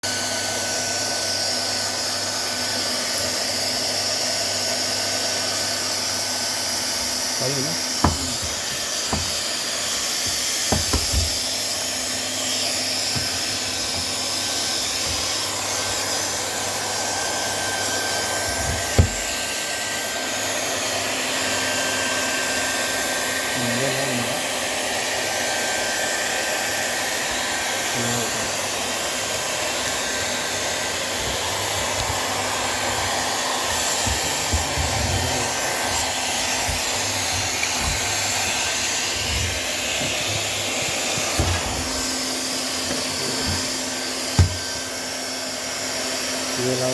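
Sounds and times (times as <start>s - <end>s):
hot-air blower hissing: 0.0s - 46.9s
machine knocks: 8.0s - 11.5s, 13.1s - 14.2s, 18.5s - 19.5s, 33.8s - 44.9s.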